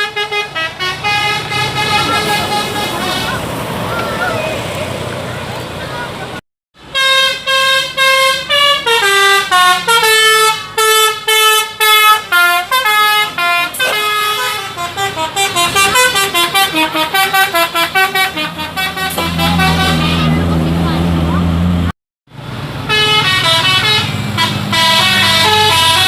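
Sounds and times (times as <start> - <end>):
musical horn playing a melody: 0.0 - 3.4, 6.9 - 20.4, 22.9 - 26.0.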